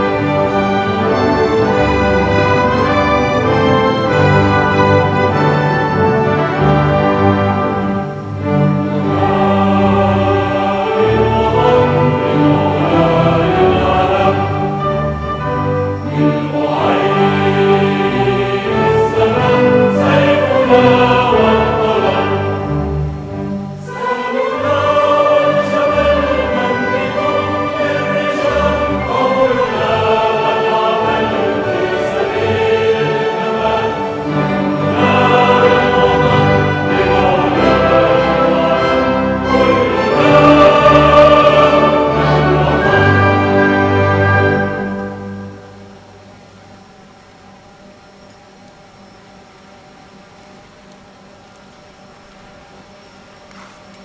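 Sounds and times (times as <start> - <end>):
choir singing sustained notes: 0.0 - 48.3
symphony orchestra: 0.0 - 54.0.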